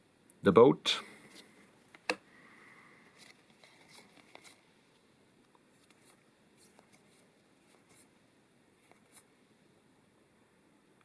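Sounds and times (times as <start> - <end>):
trading cards sliding: 3.1 - 4.6, 5.8 - 8.1, 8.8 - 9.3.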